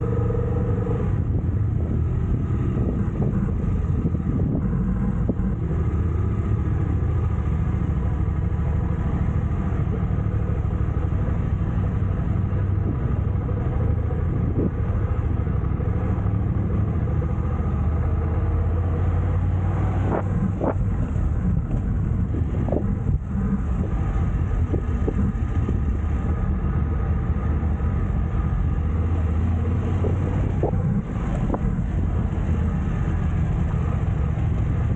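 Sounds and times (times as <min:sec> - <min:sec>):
engine rumbling: 0:00.0 - 0:34.9.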